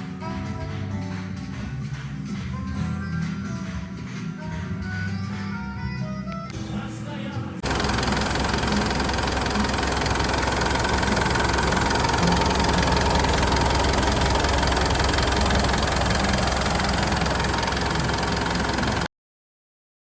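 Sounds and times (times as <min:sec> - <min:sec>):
diesel engine idling: 0:07.6 - 0:19.1.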